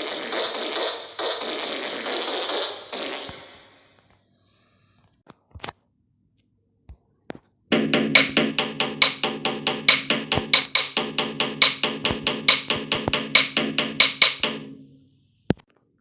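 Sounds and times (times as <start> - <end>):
sharp taps: 7.7 - 14.9
pitched percussive knocks: 7.7 - 15.0.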